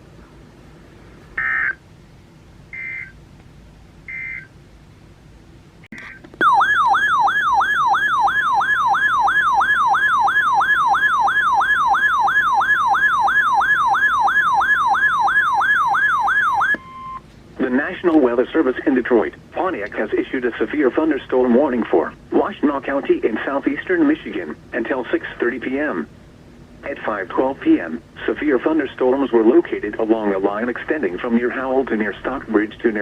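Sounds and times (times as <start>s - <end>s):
electronic siren alert tone: 1.4s - 1.8s, 2.7s - 3.1s, 4.1s - 4.5s, 6.0s - 17.2s.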